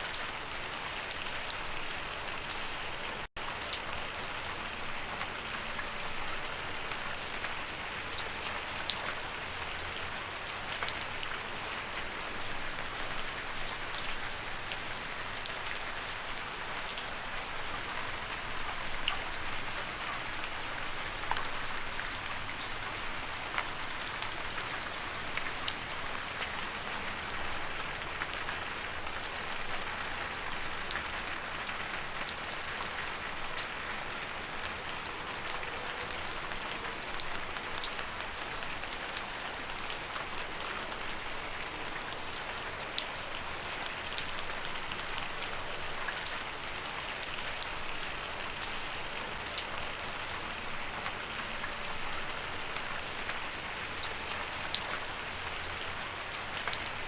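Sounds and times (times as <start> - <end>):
rain pattering on a surface: 0.0 - 57.0.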